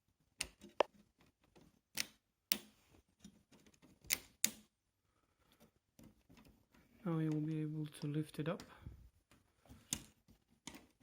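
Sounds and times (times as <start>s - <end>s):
sharp clicks and knocks: 0.3s - 4.7s.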